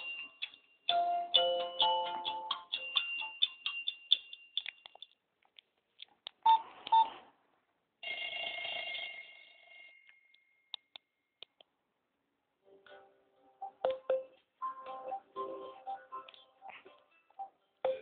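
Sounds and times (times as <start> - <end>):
phone alert tone: 13.8 - 14.4.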